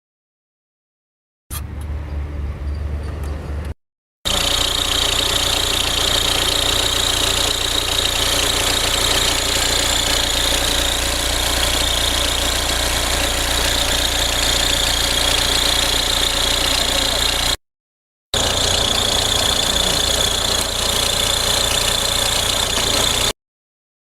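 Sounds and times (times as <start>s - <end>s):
diesel engine idling: 4.3s - 17.6s, 18.4s - 23.3s
high whine: 18.4s - 23.3s.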